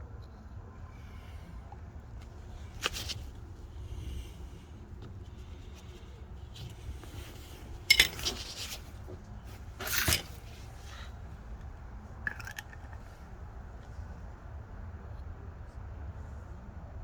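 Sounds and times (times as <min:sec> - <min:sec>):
metal scraping: 0:06.8 - 0:11.2
metal tools clinking: 0:07.2 - 0:09.0, 0:09.6 - 0:11.1.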